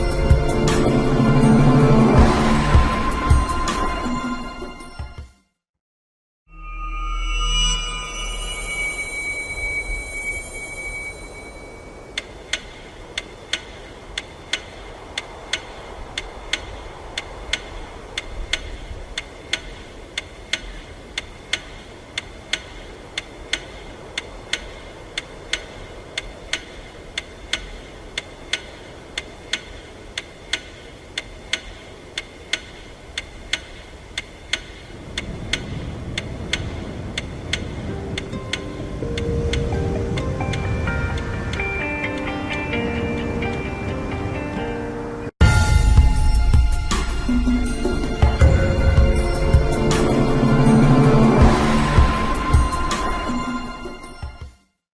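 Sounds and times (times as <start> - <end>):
deep rumbling noise: 45.4 - 53.7.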